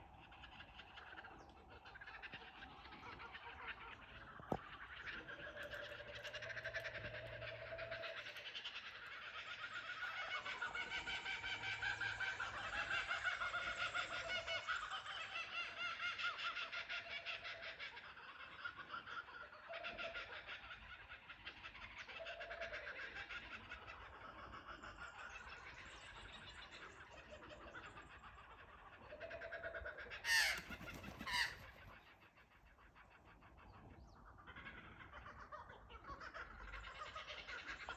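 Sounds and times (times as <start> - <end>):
kookaburras cackling laughs: 0.0 - 37.9
short sharp bird calls: 30.3 - 32.0.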